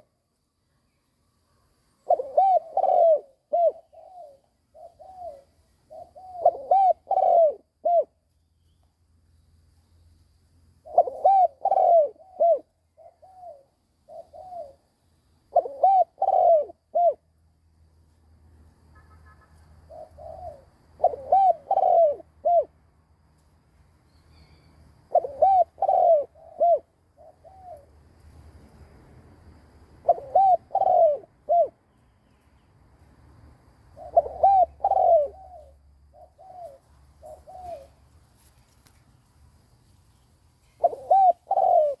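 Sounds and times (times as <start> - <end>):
dove cooing: 2.0 - 8.2, 10.8 - 14.8, 15.5 - 17.3, 19.9 - 22.7, 25.1 - 27.9, 30.0 - 31.8, 34.0 - 38.0, 40.6 - 42.0.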